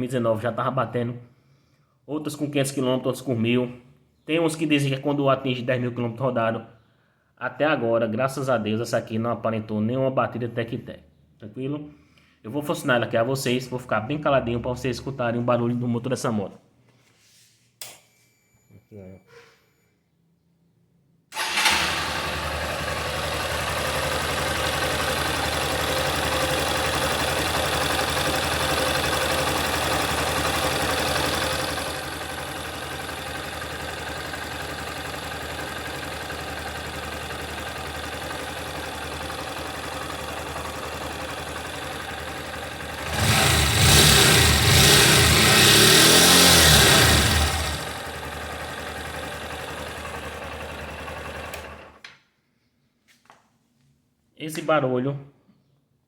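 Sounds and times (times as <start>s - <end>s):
motorcycle engine starting and idling: 21.3s - 52.2s
engine revving: 21.4s - 35.8s, 41.3s - 49.7s.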